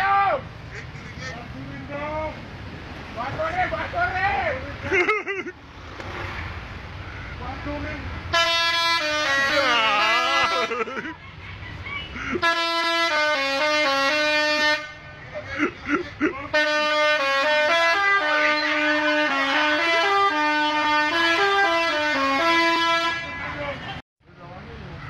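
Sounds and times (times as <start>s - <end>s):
multi-tone bus horn tune: 8.3s - 10.9s, 12.4s - 15.1s, 16.5s - 24.0s
people shouting: 9.4s - 10.8s.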